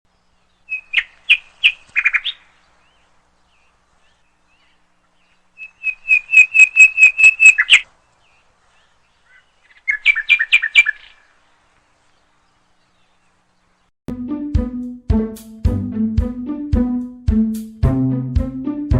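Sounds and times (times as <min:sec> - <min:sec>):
bird chirping: 0:00.1 - 0:11.4, 0:12.0 - 0:13.9.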